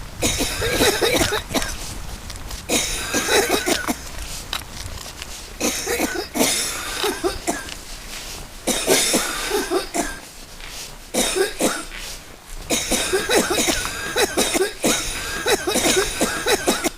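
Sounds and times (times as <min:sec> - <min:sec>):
person coughing: 0:00.2 - 0:01.8, 0:02.7 - 0:04.0, 0:05.6 - 0:07.7, 0:08.7 - 0:10.2, 0:11.2 - 0:11.9, 0:12.7 - 0:16.9.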